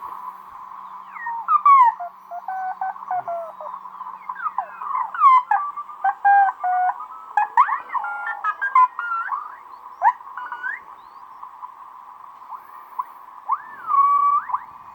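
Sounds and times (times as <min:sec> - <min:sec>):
steady hiss: 0:00.0 - 0:14.9
puppy whining and howling: 0:13.5 - 0:14.6.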